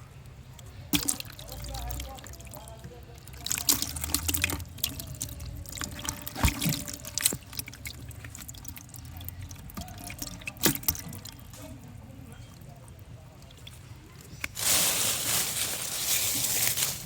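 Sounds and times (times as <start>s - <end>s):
water trickling and dripping: 0.5s - 13.8s.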